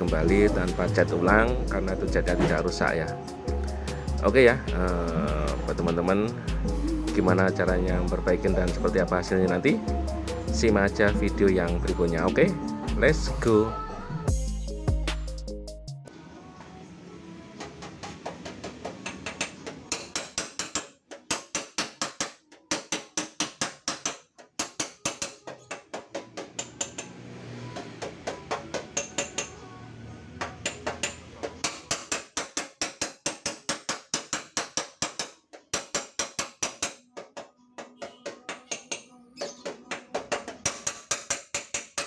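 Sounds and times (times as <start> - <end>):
hammer tapping on sheet metal: 17.6 - 27.2, 27.8 - 29.6, 30.4 - 42.0.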